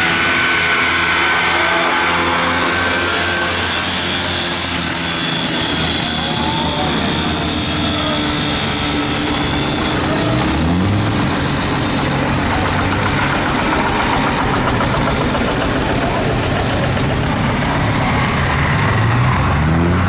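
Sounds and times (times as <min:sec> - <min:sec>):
tractor engine running: 0:00.0 - 0:20.0.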